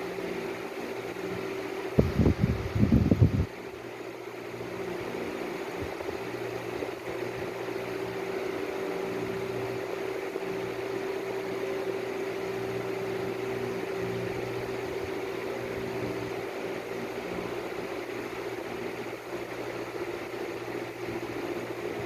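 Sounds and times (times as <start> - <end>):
steady mechanical hum: 0.0 - 22.0.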